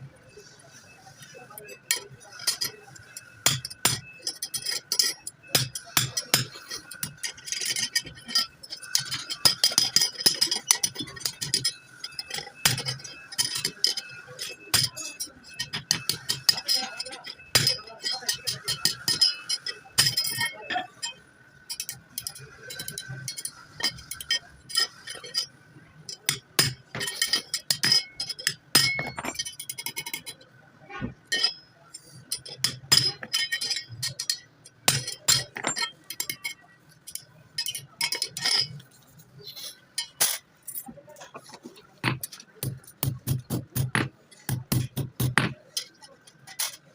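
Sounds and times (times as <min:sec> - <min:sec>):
faint steady high tone: 0:00.0 - 0:26.3
metal tools clinking: 0:00.4 - 0:30.5, 0:31.2 - 0:46.9.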